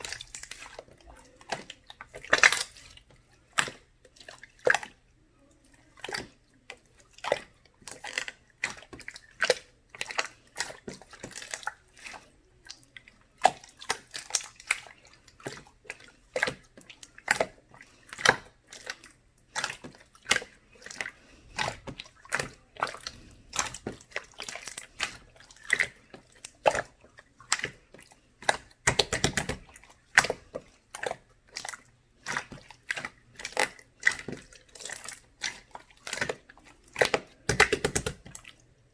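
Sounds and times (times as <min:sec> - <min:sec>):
slime clicking and popping: 0:28.4 - 0:30.4, 0:35.4 - 0:38.4.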